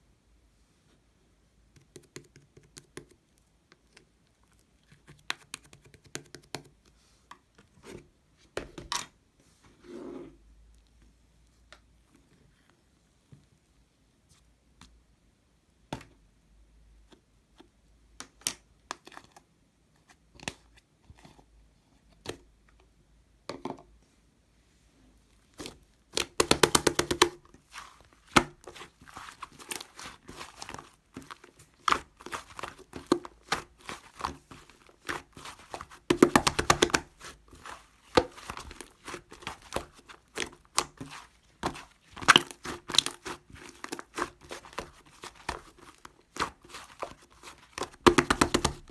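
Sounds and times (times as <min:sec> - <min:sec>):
slime squishing and crackling: 0:25.6 - 0:48.9.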